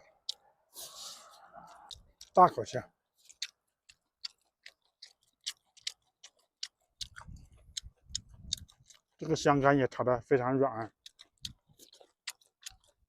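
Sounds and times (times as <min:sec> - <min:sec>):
muffled chewing: 0:00.0 - 0:13.0
wet mouth clicks and lip smacks: 0:01.6 - 0:02.4, 0:03.2 - 0:09.2, 0:10.9 - 0:13.0.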